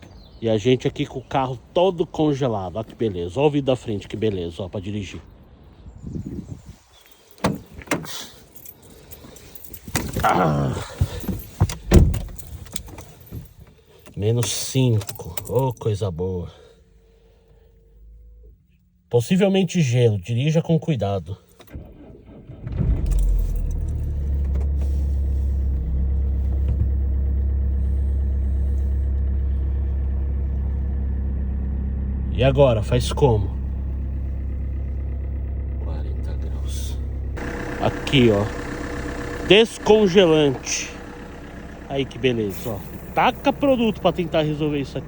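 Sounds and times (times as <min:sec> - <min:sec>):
car engine idling: 0:06.7 - 0:19.0, 0:21.4 - 0:45.0
car keys jangling: 0:06.8 - 0:16.0, 0:21.4 - 0:22.2, 0:23.0 - 0:27.0, 0:42.5 - 0:45.0
handling clicks and knocks: 0:07.0 - 0:15.9
heavy low thump: 0:26.4 - 0:27.3.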